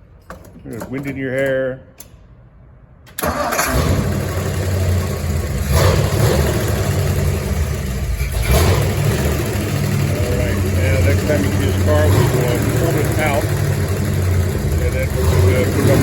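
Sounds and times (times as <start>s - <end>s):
car engine cranking: 3.1s - 16.0s
engine low rumble: 3.7s - 16.0s.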